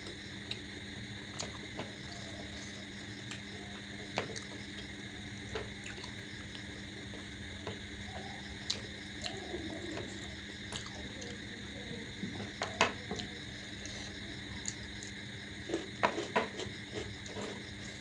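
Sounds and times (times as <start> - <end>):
steady background hum: 0.0 - 18.0.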